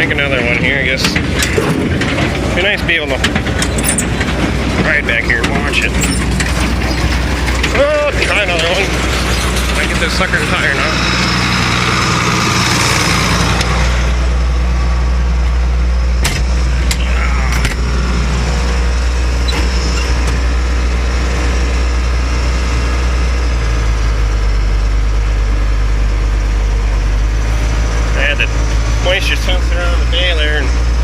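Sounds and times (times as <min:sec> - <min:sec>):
tractor engine running: 0:00.0 - 0:31.0.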